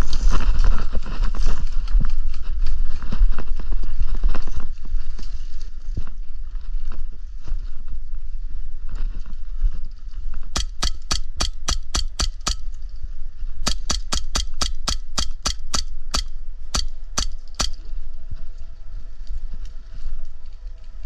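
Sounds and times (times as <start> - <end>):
steady low rumble: 10.3 - 21.0
airsoft gun shots: 10.6 - 12.8, 13.6 - 17.9.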